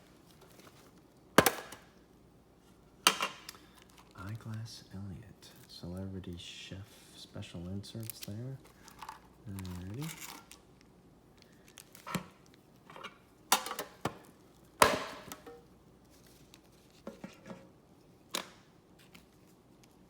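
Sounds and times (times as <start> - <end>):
foil pack rustle: 7.0 - 10.8, 11.4 - 12.7, 16.0 - 17.0.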